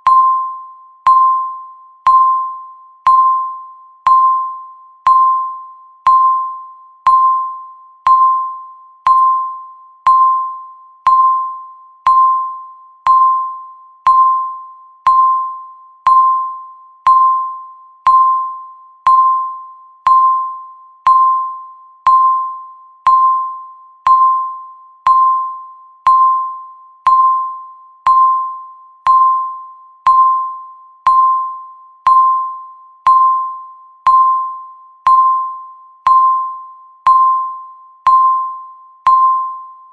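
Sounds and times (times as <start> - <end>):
timer beeping: 0.0 - 39.9.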